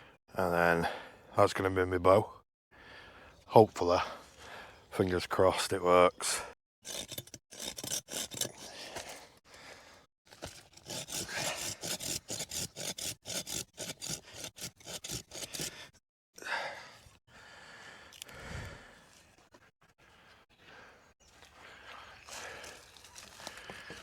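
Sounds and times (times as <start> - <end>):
blade sawing through wood: 6.8 - 9.4, 10.3 - 16.0.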